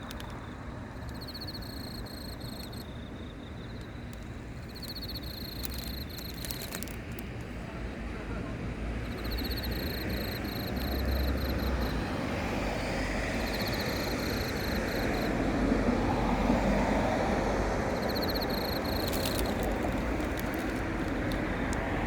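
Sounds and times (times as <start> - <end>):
cricket chirping: 0.0 - 7.3, 8.9 - 22.0
distant engine rumble: 7.6 - 22.0.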